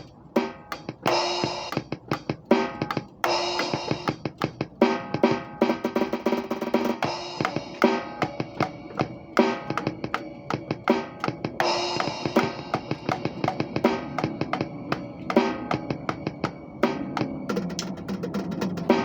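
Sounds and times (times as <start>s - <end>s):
snare and tom hits: 0.0s - 19.0s
cymbal crashes ringing: 7.0s - 17.5s.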